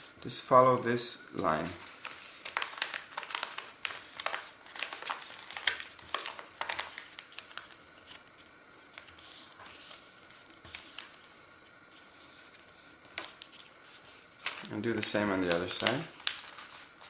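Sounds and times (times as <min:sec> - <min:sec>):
paper crackling and rustling: 0:01.5 - 0:17.0.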